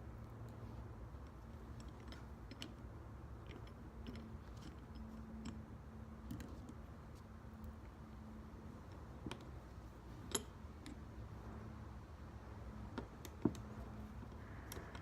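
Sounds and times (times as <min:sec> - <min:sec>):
metallic clicks of small parts: 0:01.2 - 0:08.0, 0:10.2 - 0:11.1, 0:12.9 - 0:15.0.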